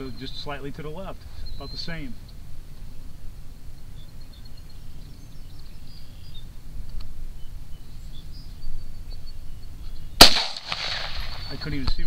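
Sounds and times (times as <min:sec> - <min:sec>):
faint bird chirps: 0:00.0 - 0:10.3, 0:11.1 - 0:12.0
faint click: 0:06.8 - 0:07.1.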